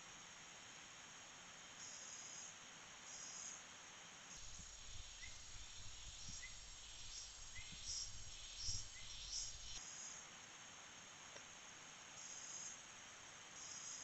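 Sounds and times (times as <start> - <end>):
steady hiss: 0.0 - 14.0
high-pitched insect calls: 1.7 - 3.7, 4.3 - 10.3, 12.1 - 12.9, 13.5 - 14.0.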